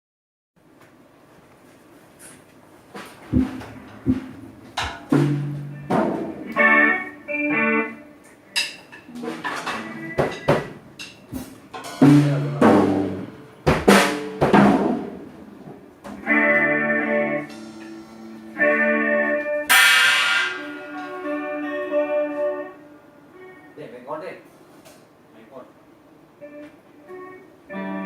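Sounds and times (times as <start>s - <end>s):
drum kit hits: 3.2s - 7.7s, 9.1s - 15.5s, 17.4s - 19.0s, 19.7s - 21.3s
held keyboard chords: 3.3s - 8.3s, 16.1s - 19.7s, 20.4s - 23.9s, 26.4s - 28.0s
cymbal crashes: 17.5s - 18.7s, 19.7s - 21.1s.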